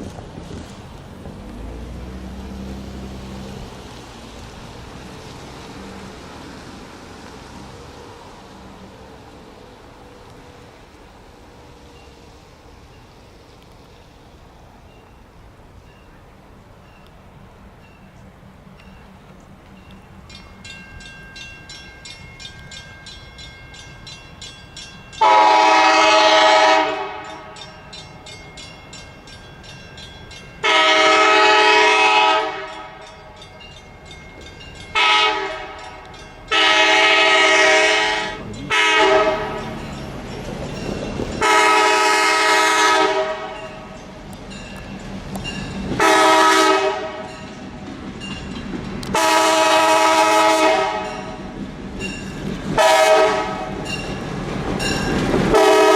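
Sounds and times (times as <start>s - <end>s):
train rumble: 0.0s - 55.9s
locomotive air horn blasts: 25.2s - 27.6s, 30.6s - 33.1s, 34.9s - 39.7s, 41.4s - 43.9s, 46.0s - 47.4s, 49.1s - 51.2s, 52.8s - 53.8s, 55.5s - 55.9s.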